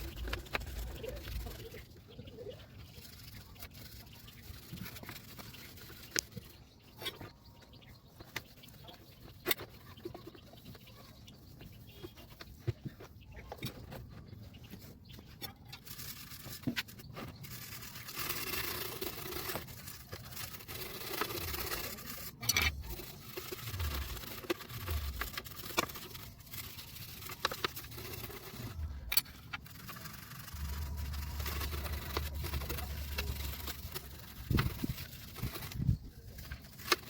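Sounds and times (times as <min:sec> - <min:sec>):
scrubbing and scraping on grinder: 0:00.0 - 0:37.0
low steady hum: 0:20.9 - 0:37.0.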